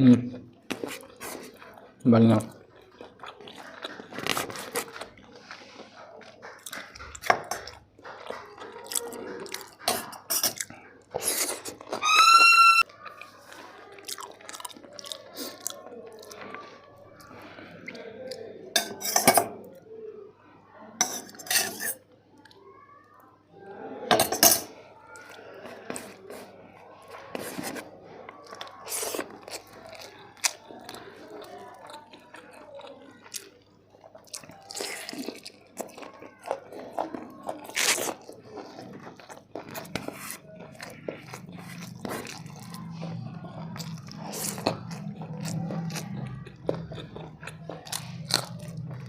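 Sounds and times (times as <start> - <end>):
high-pitched squeak tone: 12.0 - 12.9
cutlery clinking on a plate: 18.8 - 19.6, 21.0 - 22.0, 24.1 - 24.7
wet chewing mouth clicks: 28.4 - 49.0.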